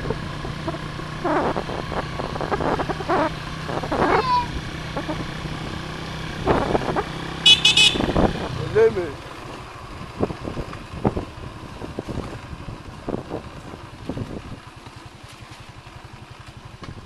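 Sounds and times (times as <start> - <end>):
short high-pitched squeak: 0.0 - 5.3
motorcycle engine running: 0.0 - 17.0
wind and road noise: 0.0 - 17.0.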